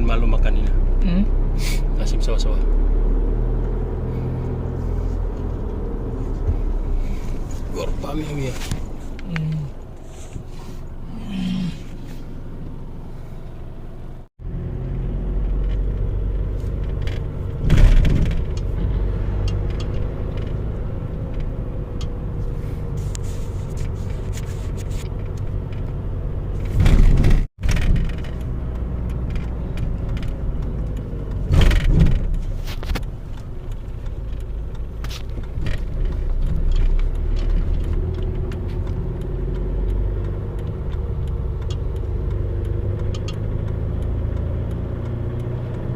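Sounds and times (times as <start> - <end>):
car engine low rumble: 0.0 - 45.9.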